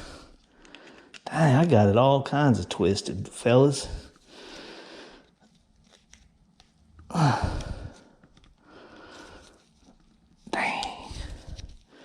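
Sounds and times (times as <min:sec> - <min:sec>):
man sighing and exhaling: 0:07.1 - 0:08.1.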